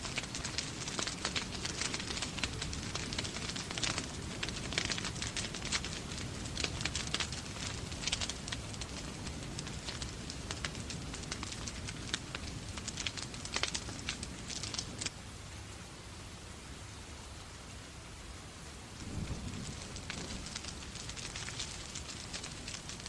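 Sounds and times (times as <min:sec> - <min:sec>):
wood fire crackling and popping: 0:00.0 - 0:15.1, 0:19.0 - 0:23.0
falling rain hiss: 0:00.0 - 0:23.0.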